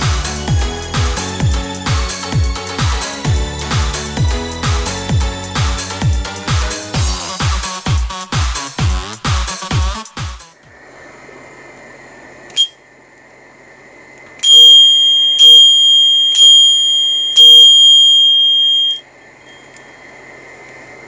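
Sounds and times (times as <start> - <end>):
bicycle bell ringing: 12.5 - 12.7, 14.4 - 19.7.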